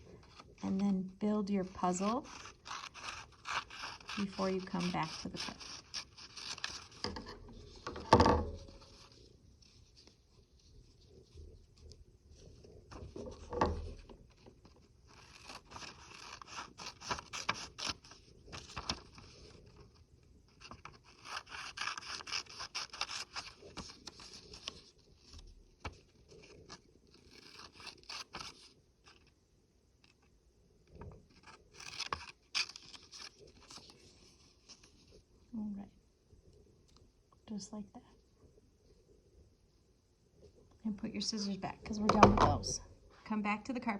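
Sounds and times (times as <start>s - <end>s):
scissors snipping paper: 2.0s - 7.0s, 15.1s - 19.1s, 20.7s - 24.7s, 31.3s - 33.9s.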